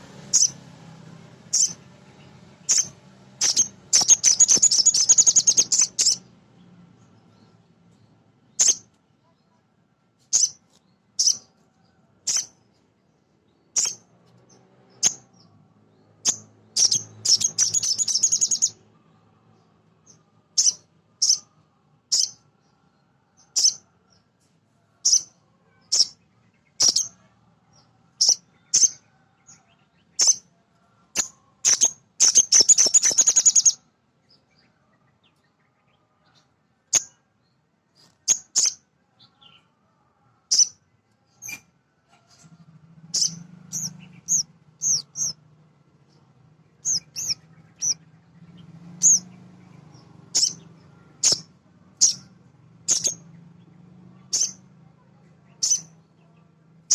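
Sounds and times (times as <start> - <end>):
bird chipping high-pitched: 0.3 - 0.6, 1.5 - 1.8, 2.7 - 6.3, 8.6 - 8.9, 10.3 - 10.6, 11.2 - 11.5, 12.3 - 12.6, 13.8 - 14.0, 15.0 - 15.2, 16.2 - 18.8, 20.6 - 21.5, 22.1 - 22.4, 23.5 - 23.8, 25.0 - 25.3, 25.9 - 26.2, 26.8 - 27.2, 28.2 - 29.0, 30.2 - 30.4, 31.2 - 33.8, 38.2 - 38.8, 40.5 - 40.8, 43.1 - 45.4, 46.8 - 48.0, 49.0 - 49.3, 50.3 - 52.3, 52.9 - 53.2, 54.3 - 54.6, 55.6 - 56.0
bird chattering runs: 2.7 - 6.2, 31.2 - 33.8.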